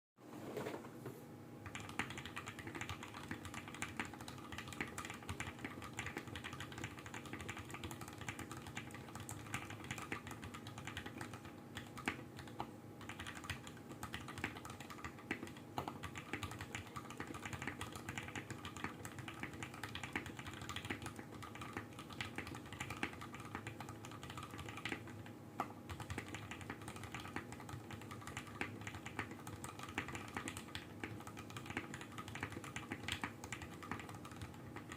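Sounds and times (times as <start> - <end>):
faint steady hum: 0.2 - 34.9
mechanical keyboard typing: 1.6 - 34.9.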